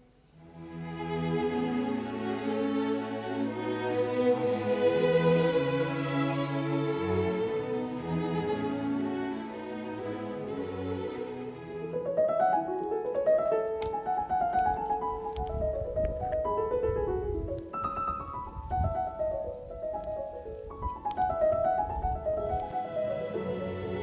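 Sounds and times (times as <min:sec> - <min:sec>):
piano playing quick runs: 0:12.2 - 0:23.6.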